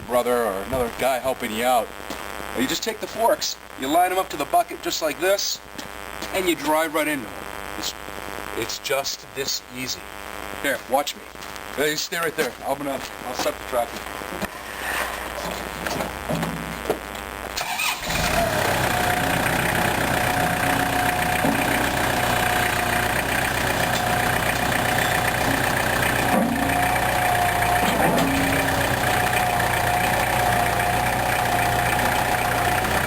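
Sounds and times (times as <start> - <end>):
tractor engine running: 17.6 - 33.0.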